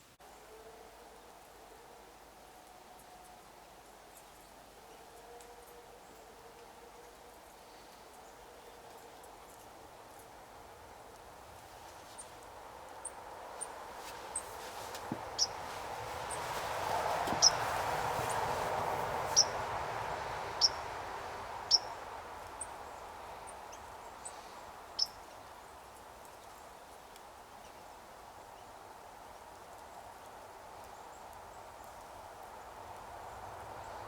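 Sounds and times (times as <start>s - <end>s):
songbird call notes: 13.0s - 18.4s, 19.3s - 19.6s, 20.5s - 20.9s, 21.7s - 22.0s, 22.6s - 25.7s.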